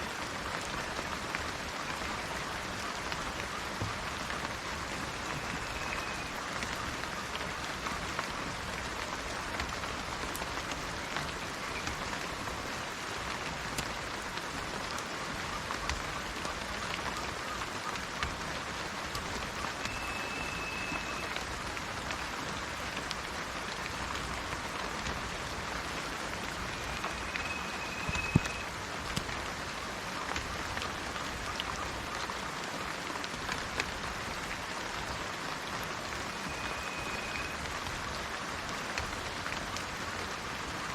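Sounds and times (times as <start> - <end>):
steady rain: 0.0 - 40.9
water drips: 2.7 - 32.4
bird whistled note: 19.7 - 21.4, 26.8 - 28.7, 36.5 - 37.6.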